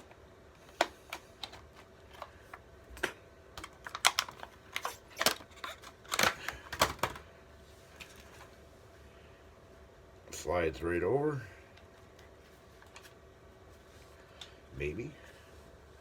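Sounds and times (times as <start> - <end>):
packaging clicking and crinkling: 3.6 - 7.2.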